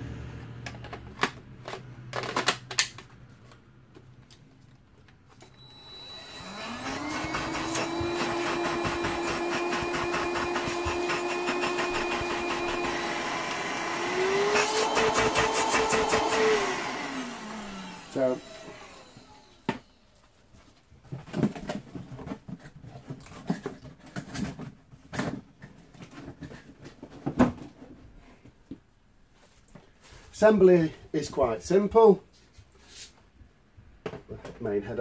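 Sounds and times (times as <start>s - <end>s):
vacuum cleaner motor whine: 5.5s - 20.1s.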